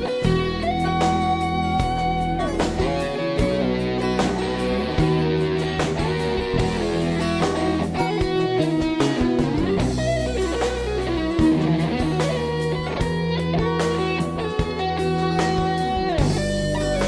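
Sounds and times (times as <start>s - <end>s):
instrumental pop-rock music: 0.0s - 17.0s.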